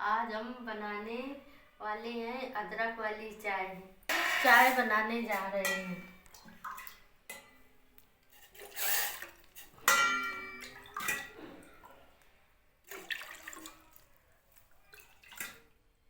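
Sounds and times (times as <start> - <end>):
metal kitchenware clanking: 4.1 - 6.2, 8.4 - 11.8
water splashing: 5.7 - 7.1, 8.6 - 12.0, 12.8 - 15.7.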